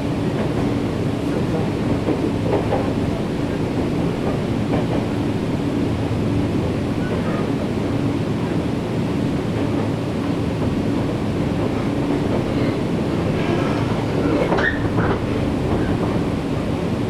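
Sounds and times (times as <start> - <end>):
train wheels rumbling on rail: 0.0 - 17.0
train squeal: 12.1 - 16.0.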